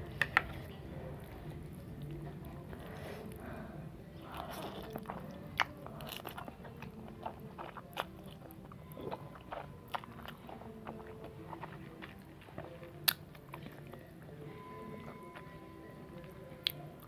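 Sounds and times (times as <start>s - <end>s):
chewing noodles: 0.3s - 17.0s.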